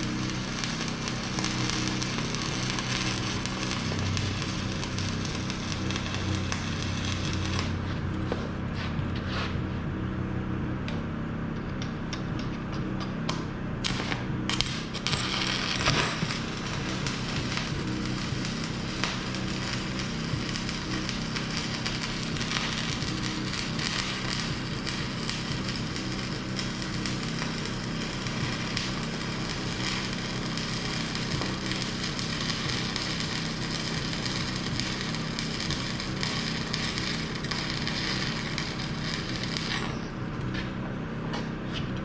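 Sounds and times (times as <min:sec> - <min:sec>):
welding arc crackling and sizzling: 0:00.0 - 0:09.7, 0:12.1 - 0:40.8.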